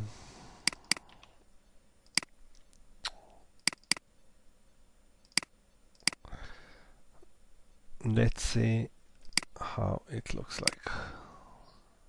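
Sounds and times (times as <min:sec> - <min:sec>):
computer mouse clicking: 0:00.6 - 0:01.4, 0:02.0 - 0:02.3, 0:03.6 - 0:04.0, 0:05.2 - 0:06.2, 0:09.3 - 0:09.5, 0:10.6 - 0:10.8.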